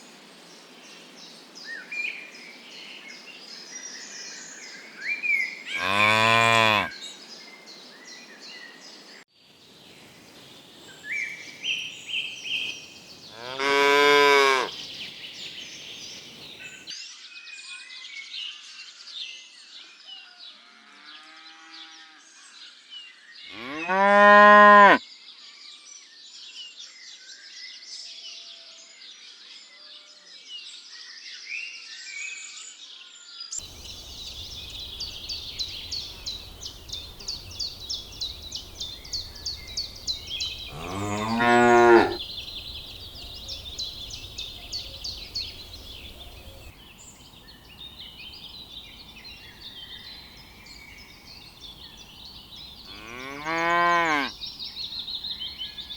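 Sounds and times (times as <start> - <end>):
cattle mooing: 5.8 - 6.9, 13.4 - 14.7, 23.6 - 25.0, 40.7 - 42.2, 52.9 - 54.3.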